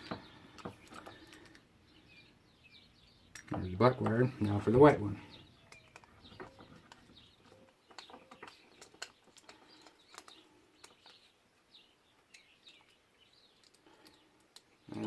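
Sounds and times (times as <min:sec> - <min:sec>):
small birds chirping: 0:00.0 - 0:15.0
clicks of small parts and screwdriver: 0:03.3 - 0:04.2, 0:05.7 - 0:11.4, 0:12.2 - 0:15.0.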